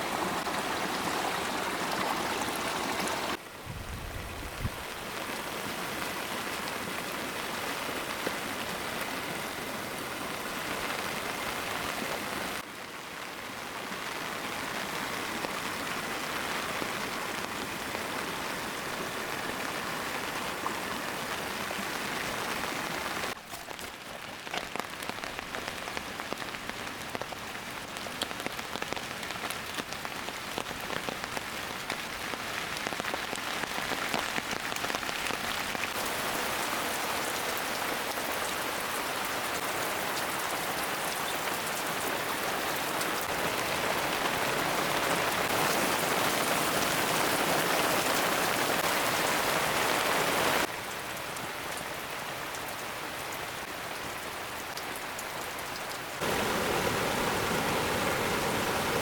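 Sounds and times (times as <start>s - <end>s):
rain falling on a surface: 0.0s - 59.0s
raindrops ticking: 23.3s - 36.6s.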